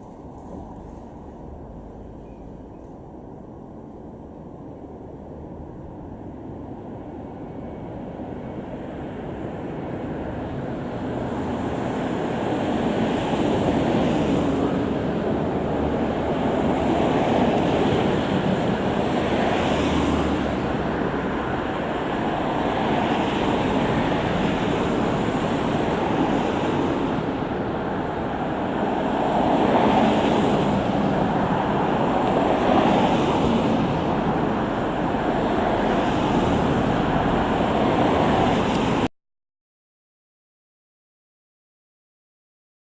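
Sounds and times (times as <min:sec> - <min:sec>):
electric train rumbling through crossing: 0:00.0 - 0:39.1.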